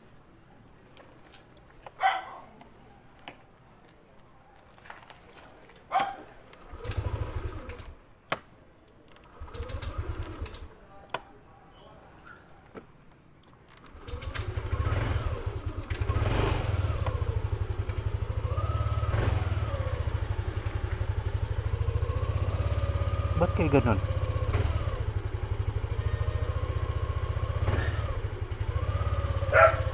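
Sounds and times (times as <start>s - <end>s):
scooter engine cranking: 5.9s - 8.1s, 9.0s - 11.2s, 13.4s - 29.9s
scooter engine running: 6.0s - 8.0s, 9.1s - 10.8s, 13.7s - 29.9s.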